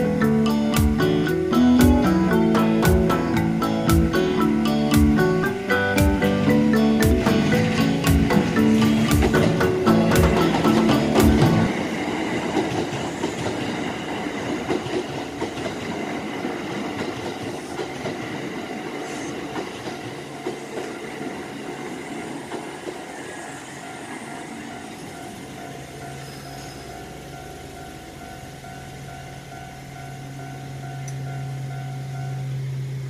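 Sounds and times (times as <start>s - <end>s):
electric train passing: 0.0s - 33.0s
wheels clattering over rails: 2.4s - 23.3s
faint high wheel squeal: 22.4s - 29.1s.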